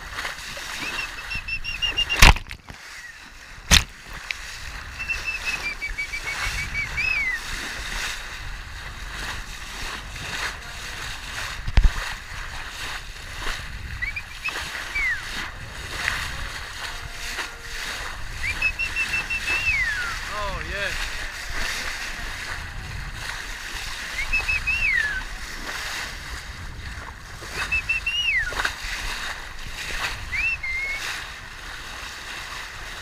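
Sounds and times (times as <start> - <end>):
water rushing along hull: 0.0 - 33.0
high squeaky chirps: 0.8 - 2.2, 5.0 - 7.4
sharp knocks: 3.7 - 4.0.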